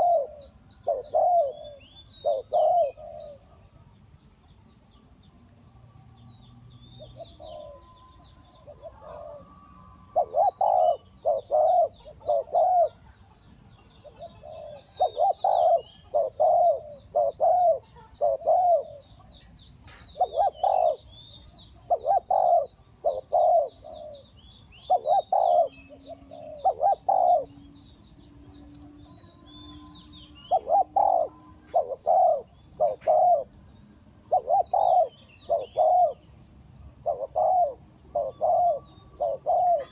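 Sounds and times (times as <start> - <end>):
dove cooing: 0.0 - 3.7, 7.0 - 39.9
small birds chirping: 0.0 - 39.9.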